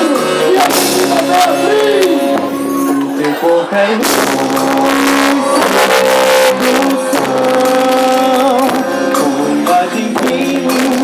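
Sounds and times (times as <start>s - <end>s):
held melody notes: 0.4s - 8.5s
percussion strikes: 0.5s - 9.5s.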